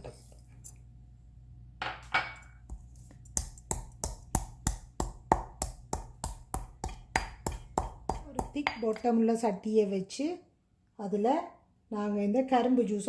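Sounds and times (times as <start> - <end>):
pestle pounding peppercorns: 2.7 - 9.0.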